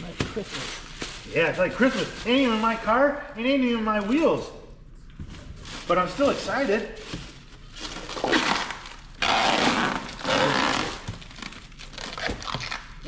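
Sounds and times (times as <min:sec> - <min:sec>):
packaging ripping and crackling: 0:07.8 - 0:13.0.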